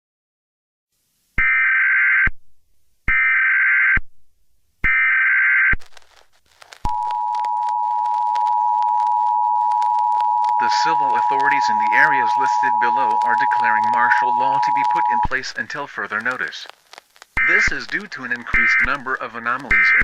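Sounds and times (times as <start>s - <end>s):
faint static clicks: 5.6s - 20.0s.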